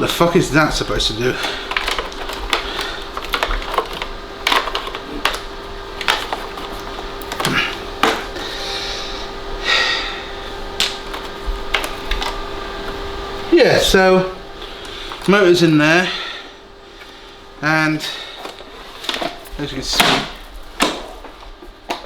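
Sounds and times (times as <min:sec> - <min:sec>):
faint steady hum: 0:00.0 - 0:22.0
plastic casing clicks and rattles: 0:01.7 - 0:05.4.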